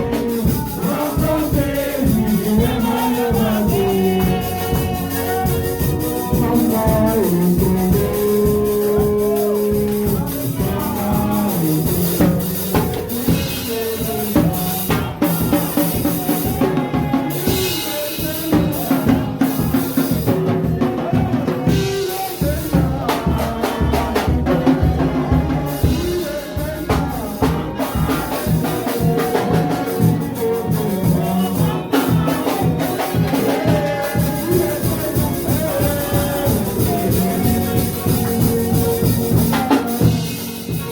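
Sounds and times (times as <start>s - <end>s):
drum kit beat: 0.0s - 40.9s
held instrument notes: 24.5s - 40.9s.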